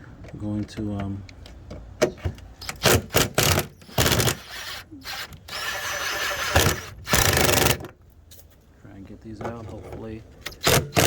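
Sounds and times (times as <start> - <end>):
cordless drill whining: 3.4 - 7.8.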